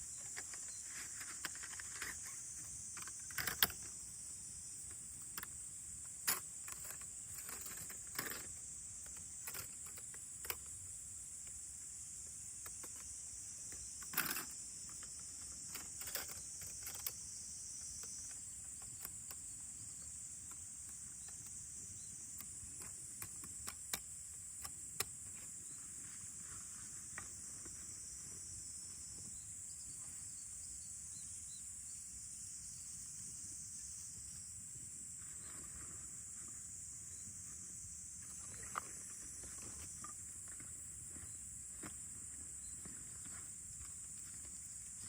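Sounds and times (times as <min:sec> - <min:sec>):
insects droning: 0:00.0 - 0:45.0
sharp clicks and knocks: 0:03.0 - 0:04.0.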